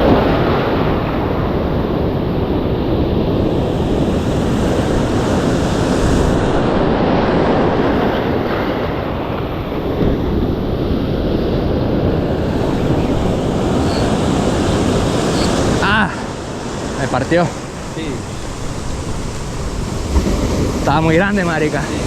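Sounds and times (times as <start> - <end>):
surf breaking: 0.0 - 22.0
wind buffeting microphone: 0.0 - 22.0.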